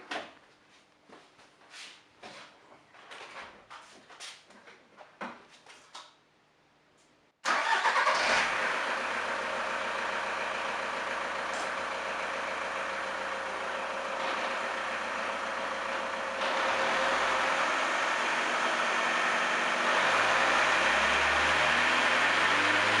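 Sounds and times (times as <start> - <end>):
car engine running: 8.5 - 23.0.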